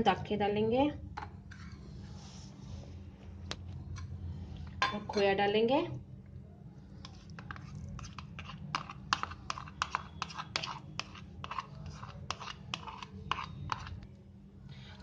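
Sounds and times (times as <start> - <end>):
spoon scraping and tapping bowl: 7.0 - 14.1.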